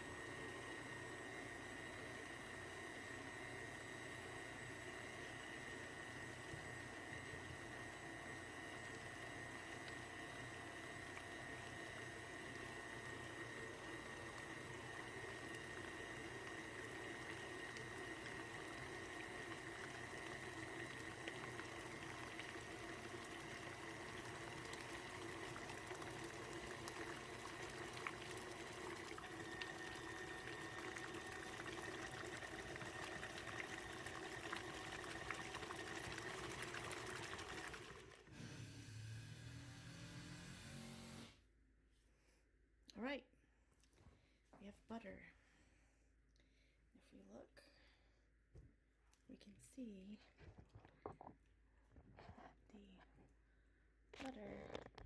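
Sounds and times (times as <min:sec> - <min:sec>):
stand mixer motor whining: 0:00.0 - 0:41.4.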